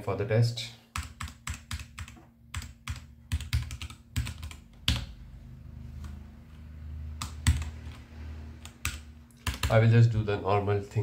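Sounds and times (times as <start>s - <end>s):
mechanical keyboard typing: 0.9s - 5.2s, 7.2s - 8.0s, 8.6s - 9.8s.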